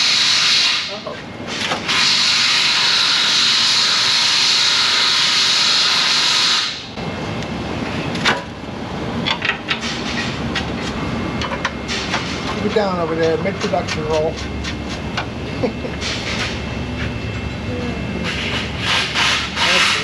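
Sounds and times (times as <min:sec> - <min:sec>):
compressed air hissing: 0:18.2 - 0:20.0.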